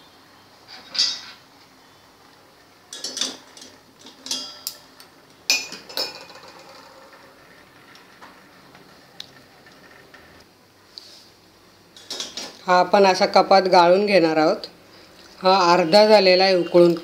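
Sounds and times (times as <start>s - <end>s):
kitchen utensils clinking: 0.7s - 1.4s, 2.9s - 7.2s, 12.0s - 12.6s.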